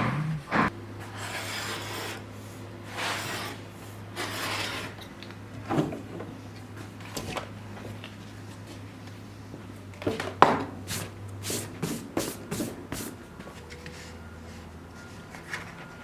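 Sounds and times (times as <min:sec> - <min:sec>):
steady low hum: 0:00.0 - 0:01.1.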